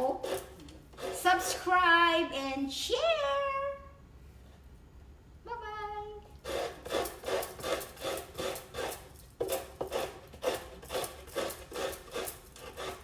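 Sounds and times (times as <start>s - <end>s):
coconut scraper rasping: 0.0s - 1.6s, 6.4s - 13.0s.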